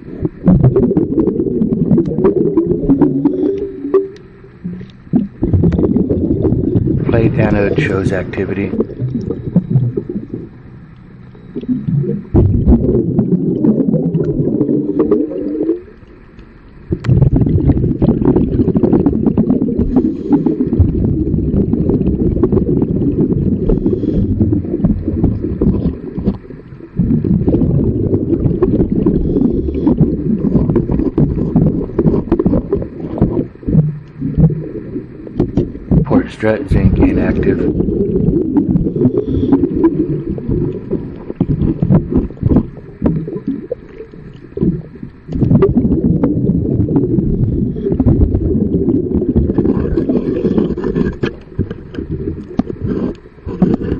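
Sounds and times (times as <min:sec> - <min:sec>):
scuba regulator breath bubbling: 0:00.0 - 0:10.6, 0:11.4 - 0:15.9, 0:16.9 - 0:53.9.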